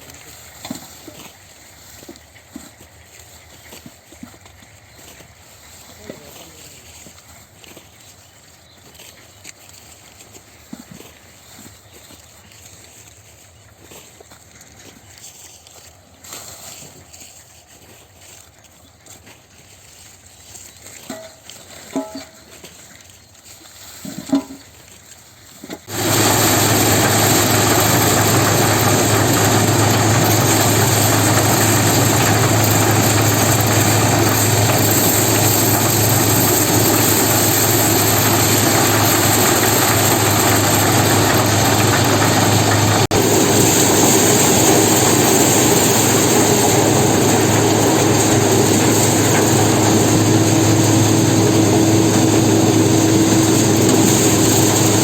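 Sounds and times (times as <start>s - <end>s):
higher steady hum: 25.9s - 55.0s
threshing machine humming: 25.9s - 55.0s.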